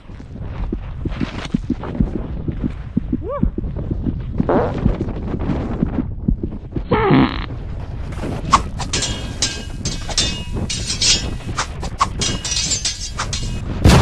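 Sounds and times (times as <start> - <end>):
sharp clicks and clattering knocks: 8.5 - 14.0.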